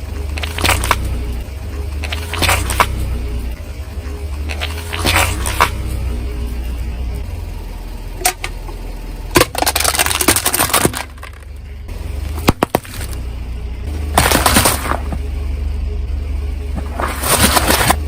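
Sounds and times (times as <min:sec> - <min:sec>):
tyre crushing crunchy objects: 0:00.0 - 0:01.4, 0:02.0 - 0:03.2, 0:04.4 - 0:05.9, 0:09.3 - 0:11.5, 0:12.1 - 0:13.2, 0:13.9 - 0:15.2, 0:16.7 - 0:18.0
car hum: 0:00.0 - 0:18.0.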